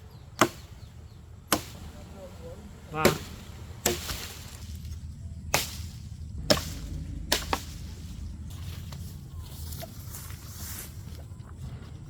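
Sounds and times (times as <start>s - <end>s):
low background rumble: 0.0s - 12.0s
sharp chopping knocks: 0.4s - 0.7s, 3.0s - 4.5s, 5.5s - 7.9s.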